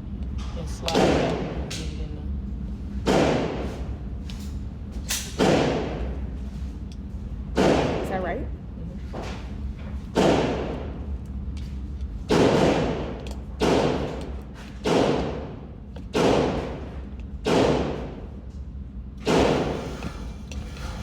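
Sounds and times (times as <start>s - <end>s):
gunshots with echo: 5.4s - 6.0s, 12.3s - 14.2s, 14.8s - 18.2s.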